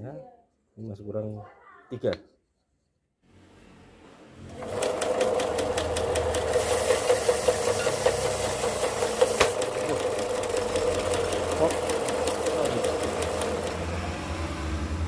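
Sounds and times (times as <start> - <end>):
belt sander motor running: 4.5 - 15.0
sanding belt ticking: 4.6 - 14.2.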